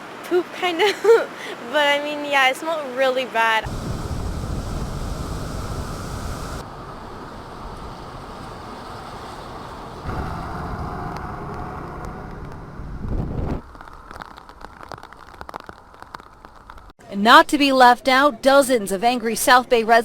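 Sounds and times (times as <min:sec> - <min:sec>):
wind buffeting microphone: 0:03.6 - 0:13.6.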